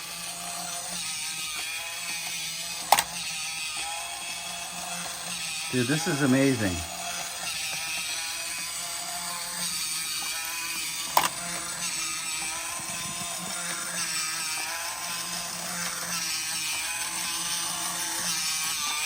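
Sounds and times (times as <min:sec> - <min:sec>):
toy motor whirring and rattling: 0:00.0 - 0:19.0
sharp click: 0:02.8 - 0:03.2.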